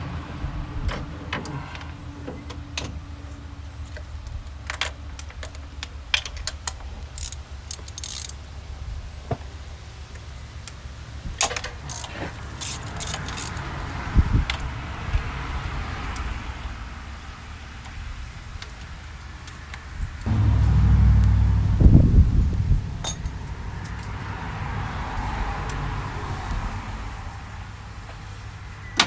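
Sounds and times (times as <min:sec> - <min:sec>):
steady low hum: 0:20.3 - 0:26.4.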